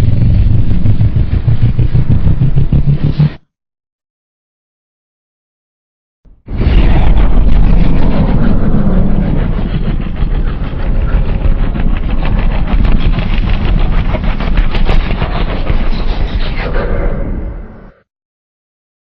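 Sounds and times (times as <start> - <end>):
monster rumble with gritty crackle: 0.0 - 3.4, 6.5 - 18.0.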